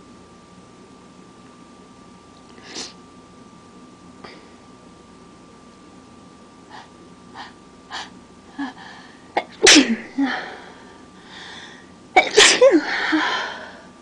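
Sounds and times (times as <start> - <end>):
person sneezing: 9.4 - 10.7, 12.2 - 13.6.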